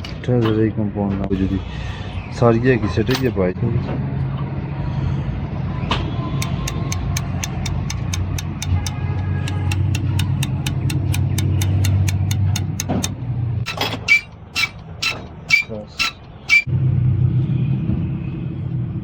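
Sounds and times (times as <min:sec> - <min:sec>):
fast sharp clicks: 0:06.4 - 0:13.2.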